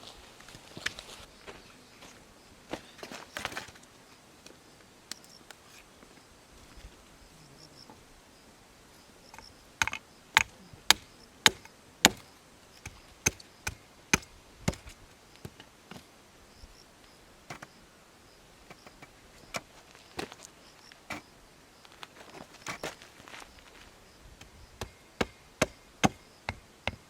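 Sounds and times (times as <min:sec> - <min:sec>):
sharp knocks: 0:24.8 - 0:27.0.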